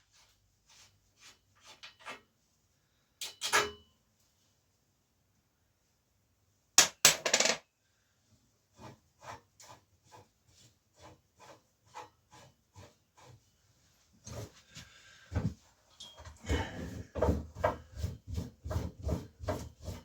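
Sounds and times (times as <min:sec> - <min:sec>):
metal clanks of bicycle parts: 0:03.2 - 0:03.9.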